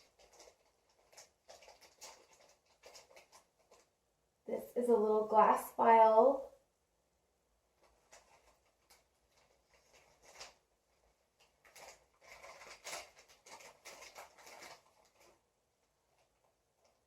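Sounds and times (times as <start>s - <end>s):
light clicks of small items: 0.0s - 3.9s
packaging rustling: 0.0s - 3.9s, 7.8s - 15.4s.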